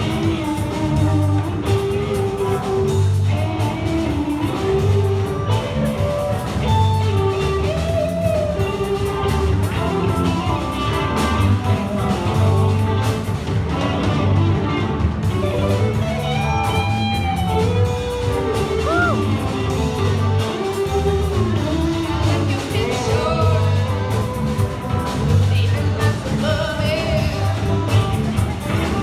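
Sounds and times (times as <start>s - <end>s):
electric guitar: 0.0s - 29.0s
rock band playing live: 0.0s - 29.0s.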